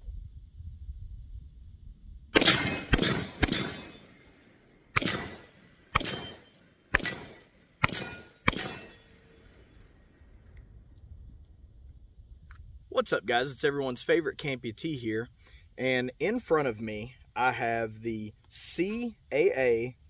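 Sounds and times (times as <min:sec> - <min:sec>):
metallic clangs of steel targets: 0:02.4 - 0:04.3, 0:04.9 - 0:09.4.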